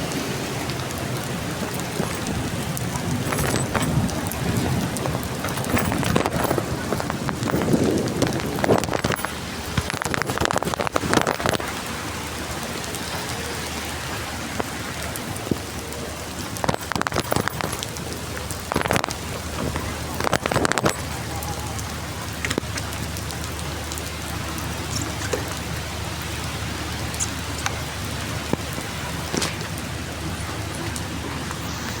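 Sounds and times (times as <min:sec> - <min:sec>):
heavy rain hiss: 0:00.0 - 0:32.0
sharp drips: 0:00.0 - 0:32.0.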